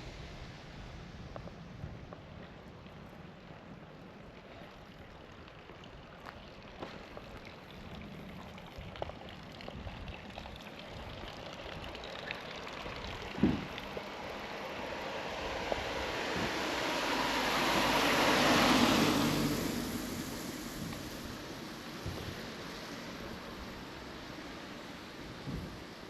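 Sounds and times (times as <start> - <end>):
vehicle passing close: 12.5 - 25.8.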